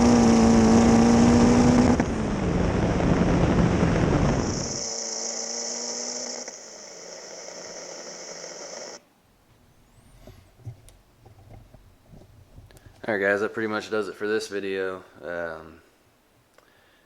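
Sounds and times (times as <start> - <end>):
high-pitched turbo hiss: 0.0 - 9.0
turbocharged car engine: 0.0 - 9.0.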